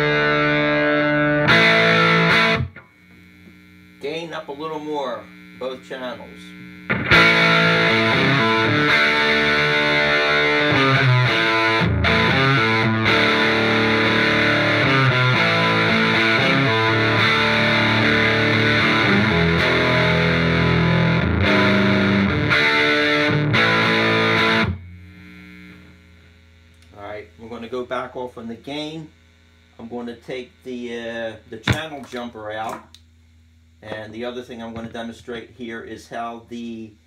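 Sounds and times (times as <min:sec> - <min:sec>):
distorted electric guitar chords: 0:00.0 - 0:28.0
amplifier mains hum: 0:00.0 - 0:37.0.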